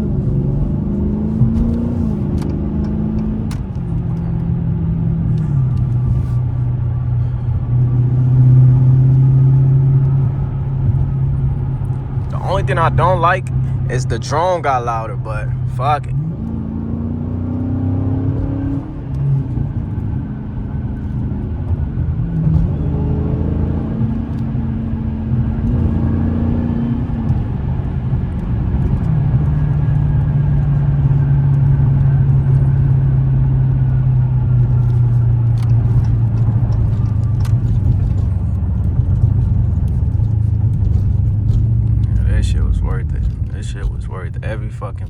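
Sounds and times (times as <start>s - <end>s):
car engine droning in cabin: 0.0s - 45.0s.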